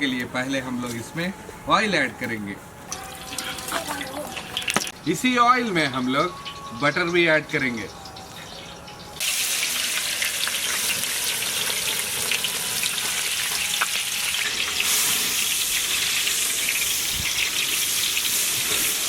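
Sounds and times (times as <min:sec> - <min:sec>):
butter sizzling in hot oil: 0:08.4 - 0:19.0.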